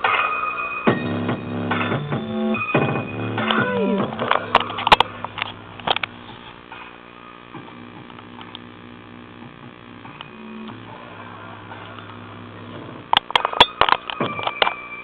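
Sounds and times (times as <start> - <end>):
soft music from small speaker: 0.0 - 15.0
clicks: 7.6 - 8.8, 9.4 - 10.9.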